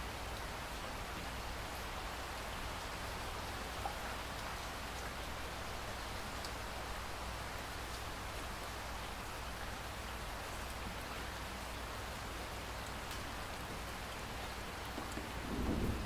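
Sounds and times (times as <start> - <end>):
steady rain falling: 0.0 - 16.0
low rumble of thunder: 15.2 - 16.0.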